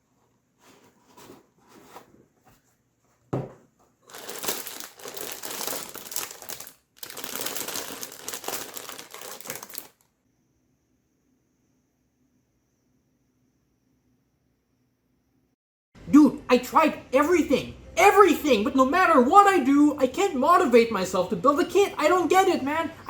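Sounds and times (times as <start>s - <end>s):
material crinkling: 4.0s - 10.1s.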